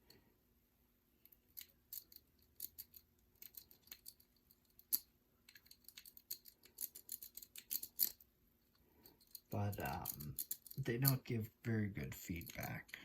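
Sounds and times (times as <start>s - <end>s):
lock pick clicking in lock: 1.3s - 8.2s.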